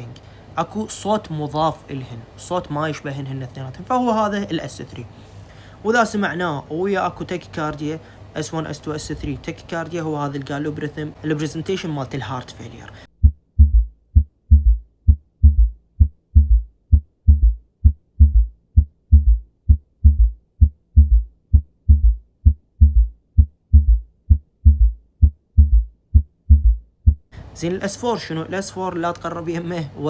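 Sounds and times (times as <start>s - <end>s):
heartbeat thumps through stethoscope: 13.1s - 27.3s.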